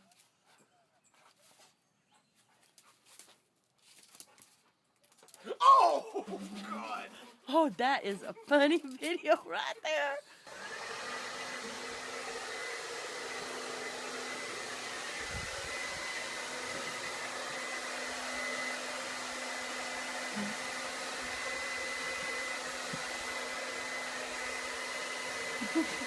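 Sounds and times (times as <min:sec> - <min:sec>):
small electric motor whining: 0:10.4 - 0:26.0.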